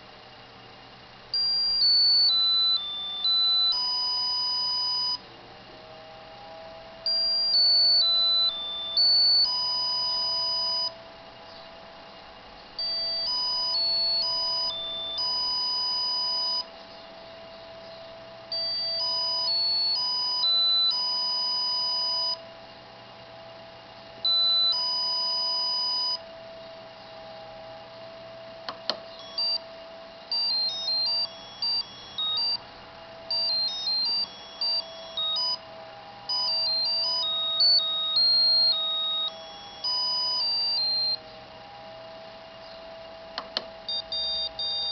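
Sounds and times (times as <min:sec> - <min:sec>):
beeping square-wave ringtone melody: 0:01.4 - 0:05.2, 0:07.0 - 0:11.0, 0:12.8 - 0:16.7, 0:18.5 - 0:22.4, 0:24.2 - 0:26.2, 0:28.8 - 0:41.2, 0:43.4 - 0:44.9.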